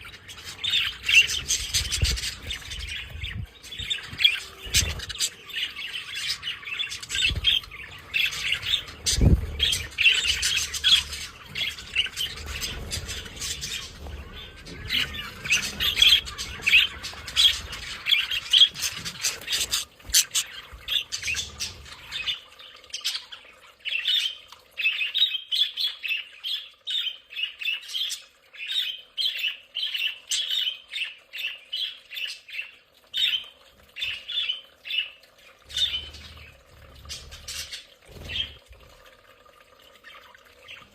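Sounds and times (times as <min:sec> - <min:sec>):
budgerigar flock chattering: 0:00.3 - 0:22.3.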